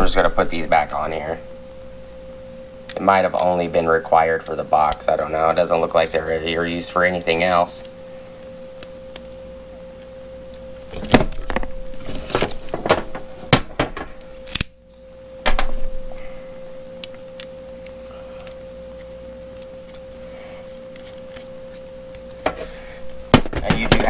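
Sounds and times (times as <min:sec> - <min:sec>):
steady high-pitched hum: 0:00.0 - 0:24.0.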